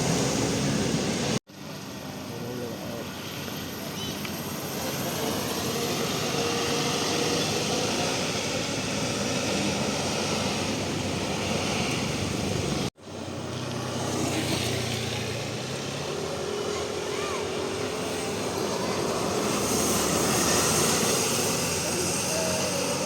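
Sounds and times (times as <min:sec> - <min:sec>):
bus passing close by: 0:00.0 - 0:23.0.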